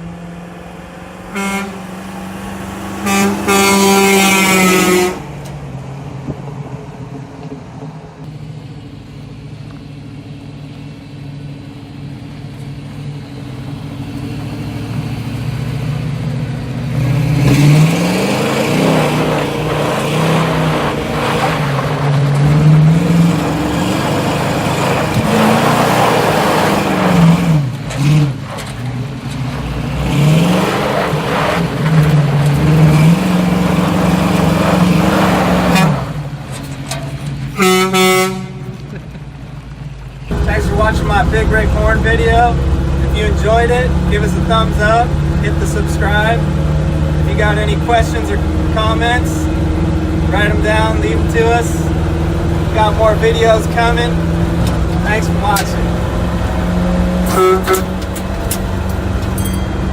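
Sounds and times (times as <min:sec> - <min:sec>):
truck engine revving: 0:00.0 - 0:07.2, 0:08.3 - 0:59.9.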